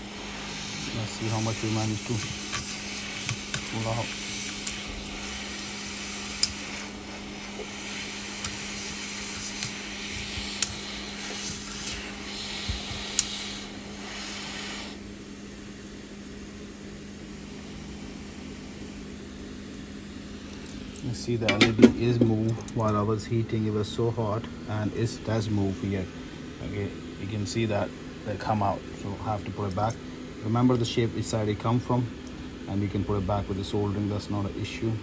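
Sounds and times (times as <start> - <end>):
heat gun blowing: 0.0 - 15.6
steady low hum: 0.0 - 35.0.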